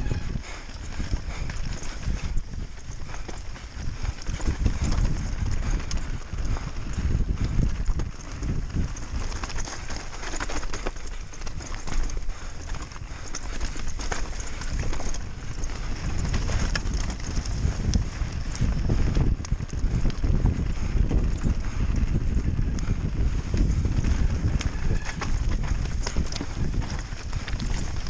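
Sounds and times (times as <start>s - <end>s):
bike rattling and clattering: 0.0s - 28.0s
wind on microphone: 0.0s - 28.0s.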